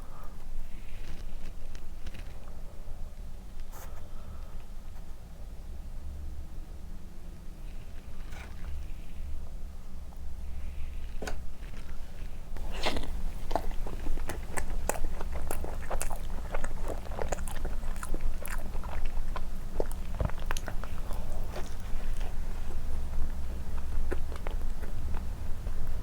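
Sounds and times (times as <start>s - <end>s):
biting and chewing bread: 0.8s - 2.6s, 11.0s - 26.0s
mouth smacks: 12.6s - 25.3s.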